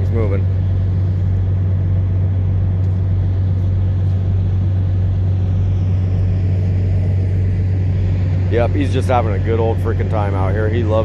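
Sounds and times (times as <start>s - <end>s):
diesel truck engine idling: 0.0s - 11.0s.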